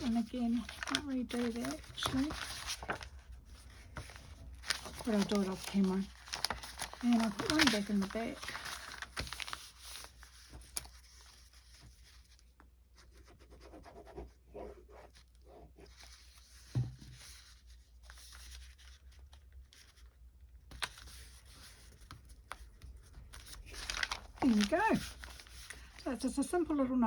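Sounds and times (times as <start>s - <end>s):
paper scratching and rubbing: 0.0s - 12.4s, 22.9s - 26.0s.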